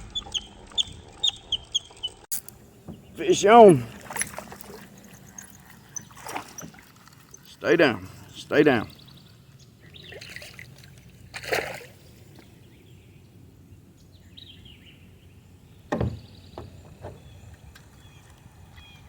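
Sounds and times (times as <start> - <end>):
water splashing and sloshing: 0.0 - 14.2, 15.0 - 18.7
knocks on kayak hull: 15.9 - 17.3.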